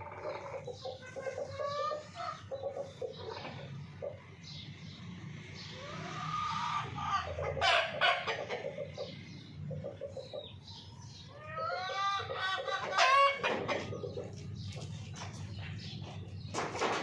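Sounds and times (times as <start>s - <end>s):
hens clucking and calling: 0.0s - 4.4s, 5.6s - 17.0s.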